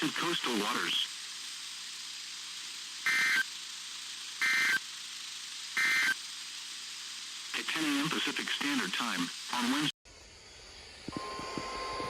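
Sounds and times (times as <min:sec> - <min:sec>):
two-tone data bursts: 0:00.0 - 0:06.3
faint radio hiss: 0:00.0 - 0:10.0.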